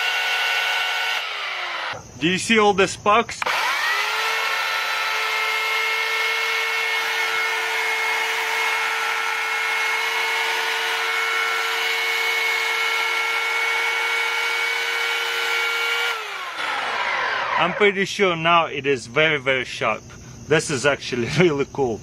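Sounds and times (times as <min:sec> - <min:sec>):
electric chainsaw whining: 0:00.0 - 0:02.2, 0:03.4 - 0:18.0.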